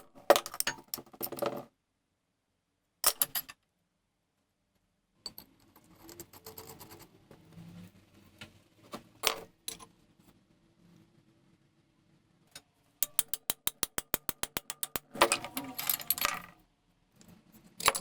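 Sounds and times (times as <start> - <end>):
small metal parts clicking: 13.0 - 16.6, 17.8 - 18.0.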